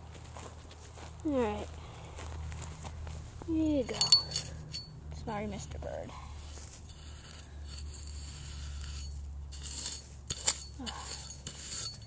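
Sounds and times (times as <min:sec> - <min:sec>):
steady low hum: 0:00.0 - 0:12.0
metal tool scraping in soil: 0:03.8 - 0:05.5, 0:06.3 - 0:12.0.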